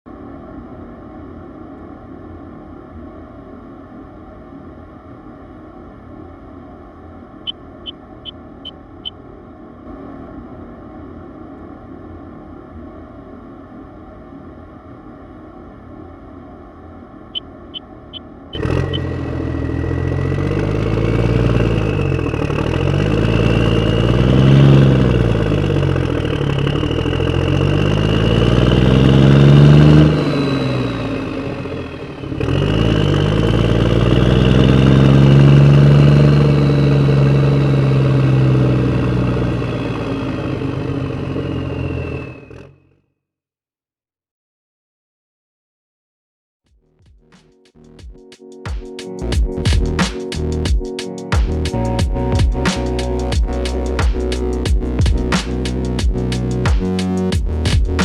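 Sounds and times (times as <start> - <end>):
heavy engine revving: 18.6 - 42.9, 51.7 - 58.0.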